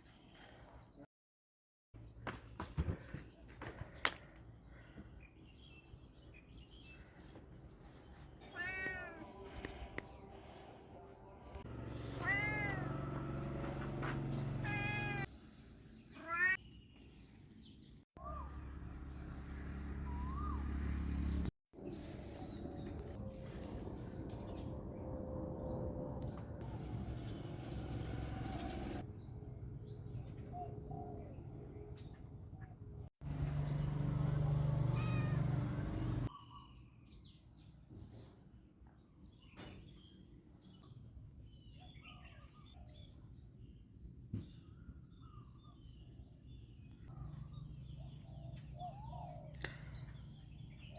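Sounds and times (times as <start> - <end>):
birds chirping: 2.0 - 37.6, 39.0 - 50.9
cat meowing: 8.5 - 9.3, 11.9 - 13.2, 14.5 - 15.3, 16.2 - 16.6, 34.9 - 35.4.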